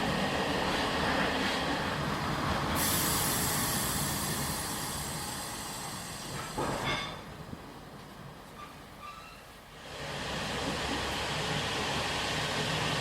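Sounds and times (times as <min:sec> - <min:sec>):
passenger train coach running: 0:00.0 - 0:13.0
high squealing hiss: 0:02.8 - 0:06.4.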